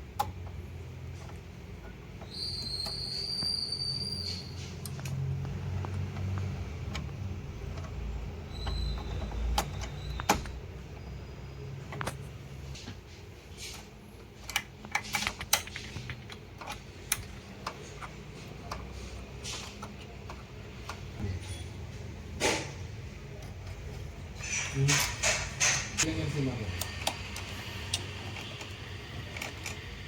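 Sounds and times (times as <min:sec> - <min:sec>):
clicks and knocks of printer parts: 0:13.6 - 0:21.2, 0:21.8 - 0:30.0.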